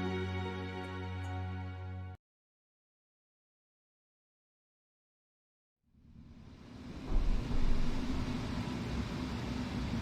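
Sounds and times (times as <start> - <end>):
background music: 0.0 - 2.2.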